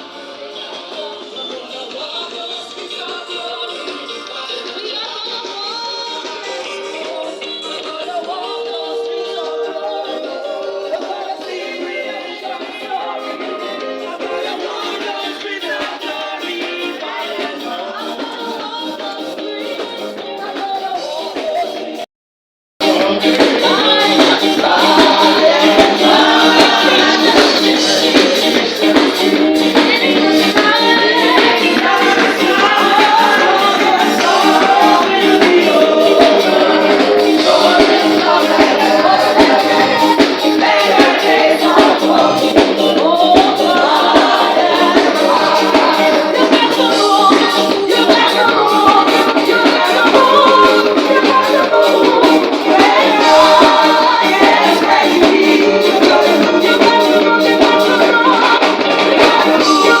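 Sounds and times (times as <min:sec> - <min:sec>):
singing over light percussion: 0:00.0 - 0:22.1, 0:22.8 - 1:00.0.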